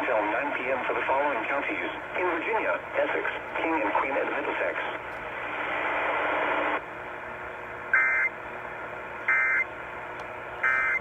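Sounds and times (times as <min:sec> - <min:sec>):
radio hiss: 0:00.0 - 0:06.8
two-tone digital chirps: 0:10.6 - 0:11.0.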